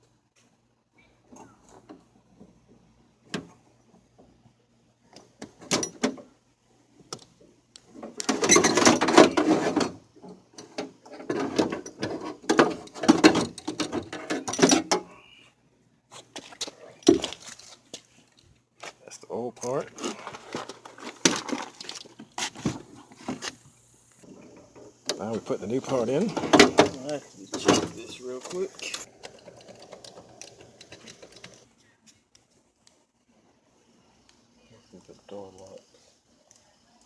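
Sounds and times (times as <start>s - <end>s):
metal rattling and scraping: 8.1s - 10.0s, 10.6s - 15.0s.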